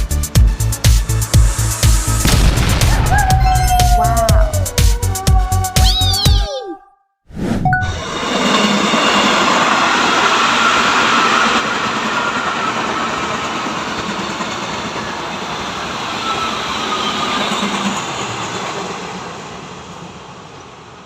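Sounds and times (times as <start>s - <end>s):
train passing on rails: 0.0s - 3.8s, 7.8s - 21.0s.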